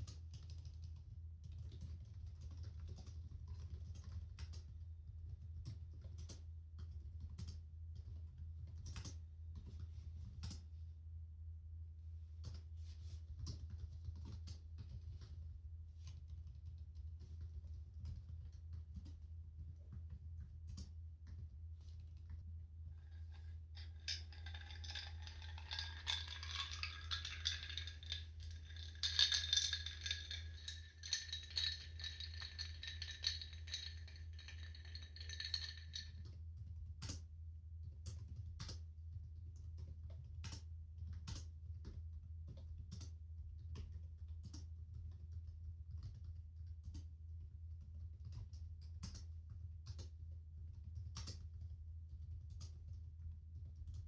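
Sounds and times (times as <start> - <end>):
steady low hum: 15.6 - 37.8
high ringing rattling tones: 23.8 - 36.1.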